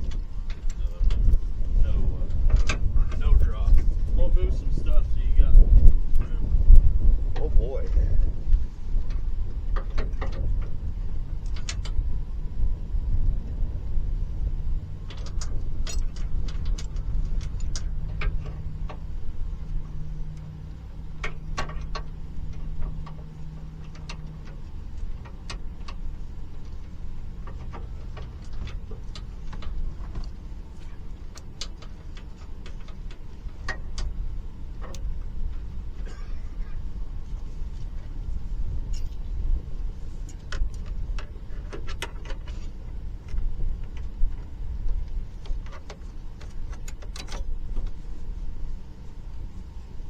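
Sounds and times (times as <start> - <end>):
low steady hum: 0.0 - 50.0
truck rumble: 0.0 - 50.0
clicks and rattles: 7.4 - 10.8, 15.0 - 19.1, 21.1 - 34.2, 40.2 - 48.0.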